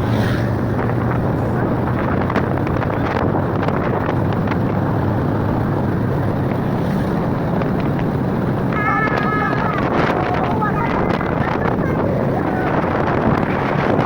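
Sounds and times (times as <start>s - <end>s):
vehicle engine running: 0.0s - 14.0s
wind noise on microphone: 0.0s - 14.0s.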